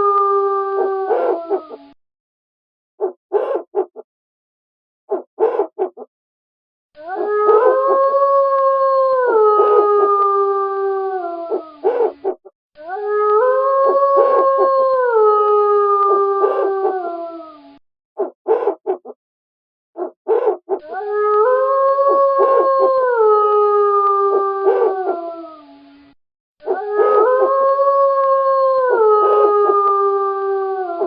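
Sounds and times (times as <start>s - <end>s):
wolf howling: 0.0s - 2.0s, 7.0s - 17.8s, 20.0s - 25.9s, 26.6s - 31.0s.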